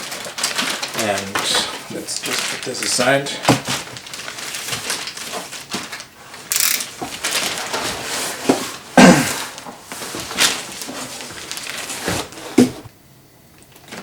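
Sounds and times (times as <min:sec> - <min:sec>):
cardboard scraping and rustling: 0:00.0 - 0:12.9.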